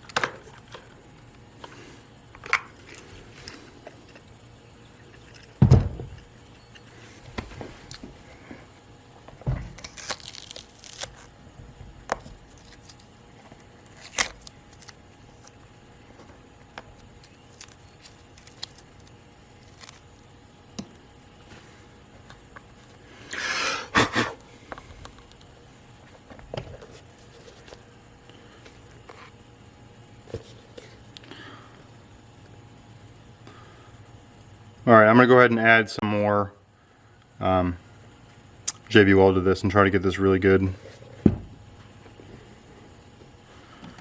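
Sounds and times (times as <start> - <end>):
heavy thump: 5.6 - 6.2, 41.2 - 41.6.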